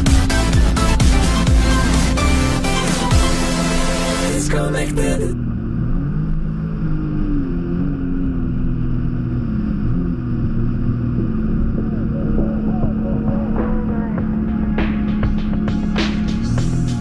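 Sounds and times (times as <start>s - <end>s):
jet ski engine running: 0.0s - 5.8s, 7.0s - 17.0s.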